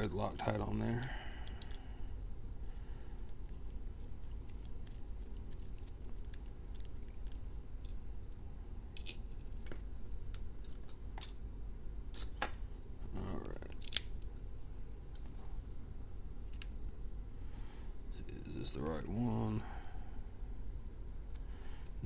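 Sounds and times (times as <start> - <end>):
metal lock parts clinking: 1.4 - 1.8, 3.3 - 8.0, 8.9 - 9.9, 10.6 - 11.4, 12.1 - 12.7, 13.5 - 14.3.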